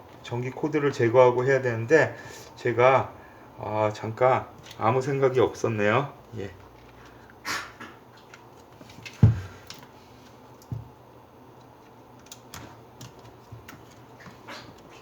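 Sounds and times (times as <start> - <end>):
heavy thud on work surface: 9.2 - 9.6.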